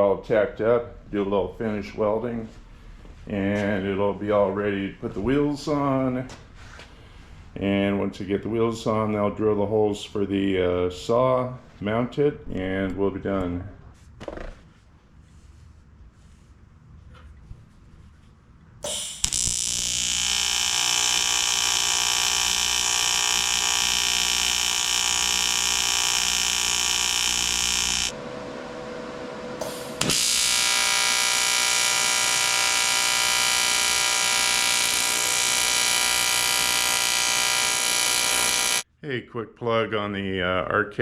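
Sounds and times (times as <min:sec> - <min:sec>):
welding arc buzzing: 0:18.8 - 0:28.2, 0:29.6 - 0:38.8.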